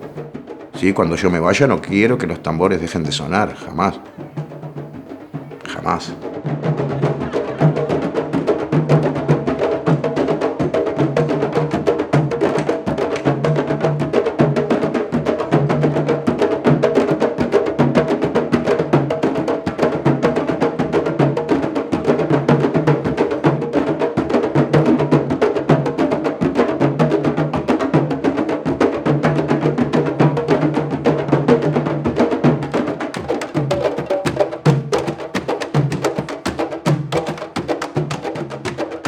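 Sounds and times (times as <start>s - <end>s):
drum ensemble playing: 0.0s - 7.2s, 32.1s - 39.0s.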